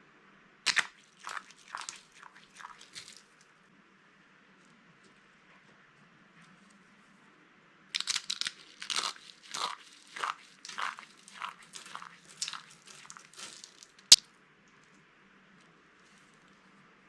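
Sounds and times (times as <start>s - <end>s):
dry bar soap crunching: 8.0s - 14.2s.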